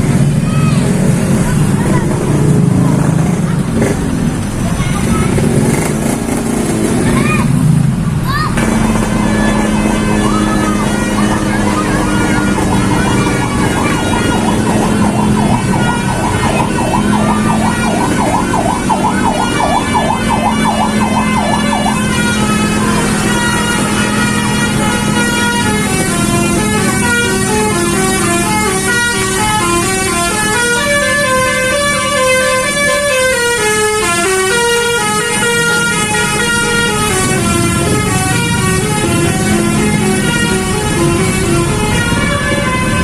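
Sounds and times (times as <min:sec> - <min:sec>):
bus horn melody: 0:08.6 - 0:43.0.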